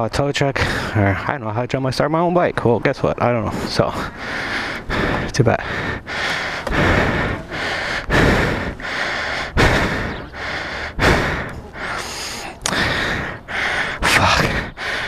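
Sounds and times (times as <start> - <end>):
man panting hard: 0.6 - 1.3, 3.4 - 15.0.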